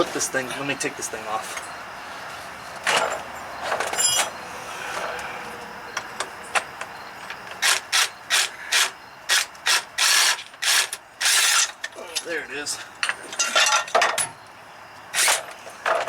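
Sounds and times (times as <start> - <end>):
metal clanks: 2.8 - 6.7, 13.0 - 14.4.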